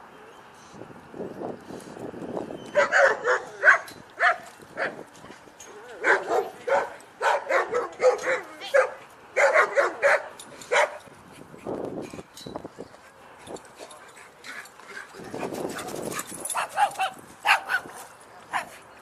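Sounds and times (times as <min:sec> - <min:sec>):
dog barking: 0:02.8 - 0:05.0, 0:06.0 - 0:11.0, 0:16.6 - 0:17.9, 0:18.5 - 0:18.8.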